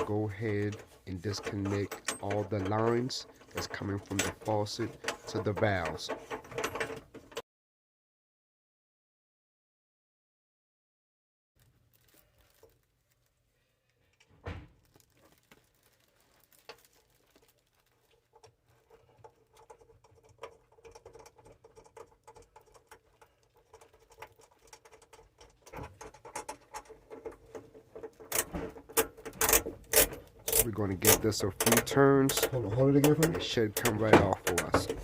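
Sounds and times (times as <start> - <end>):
clicks and knocks of tools: 0.0 - 7.4, 18.3 - 35.0.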